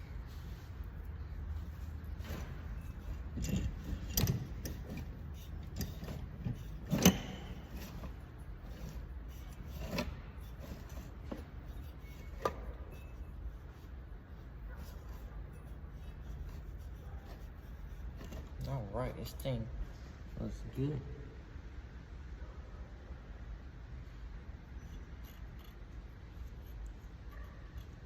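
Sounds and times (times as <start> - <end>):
steady low hum: 0.0 - 28.0
engine parts knocking and clinking: 2.1 - 8.2.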